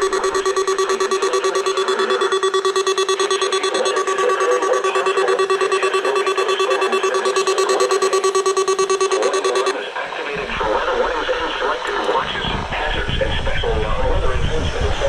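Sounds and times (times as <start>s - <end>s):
pulsing alarm buzzer tone: 0.0s - 9.8s.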